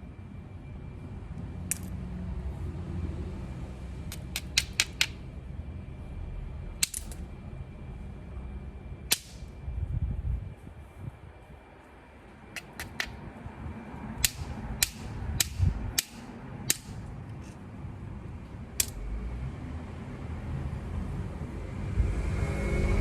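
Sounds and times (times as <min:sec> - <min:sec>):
stone clicking on stone: 0:01.7 - 0:01.9, 0:04.1 - 0:05.2, 0:06.8 - 0:07.2, 0:12.6 - 0:13.2, 0:14.2 - 0:17.6, 0:18.8 - 0:19.0
low rumble: 0:05.3 - 0:11.6.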